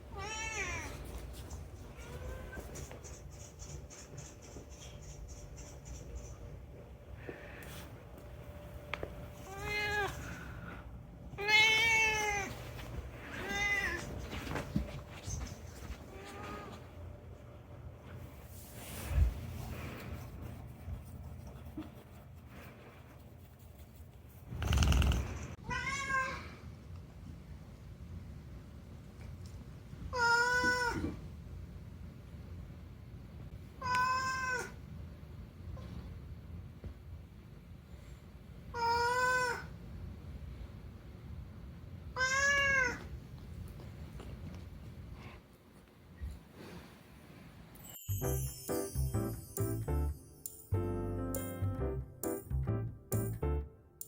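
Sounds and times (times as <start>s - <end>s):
cat meowing: 0.1s - 1.0s, 9.5s - 10.2s, 11.4s - 12.5s, 25.6s - 26.5s, 33.8s - 34.8s, 38.8s - 39.7s, 42.2s - 43.1s.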